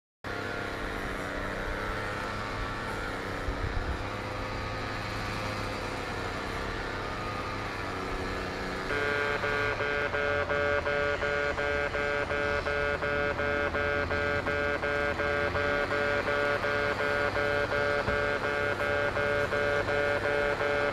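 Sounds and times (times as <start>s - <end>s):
electronic crossing bell ringing: 8.8s - 20.9s.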